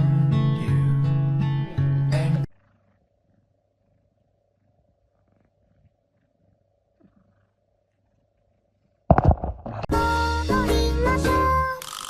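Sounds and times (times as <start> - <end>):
faint steady hum: 2.4 - 9.9.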